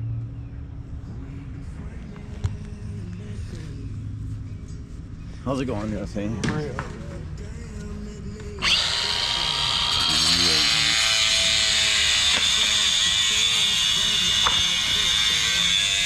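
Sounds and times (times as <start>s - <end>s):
concrete saw cutting: 8.6s - 16.0s.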